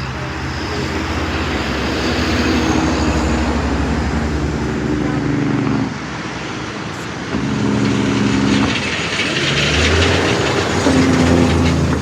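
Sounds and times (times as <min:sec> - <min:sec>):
heavy vehicle engine droning: 0:00.0 - 0:12.0
deep rumble: 0:07.1 - 0:12.0.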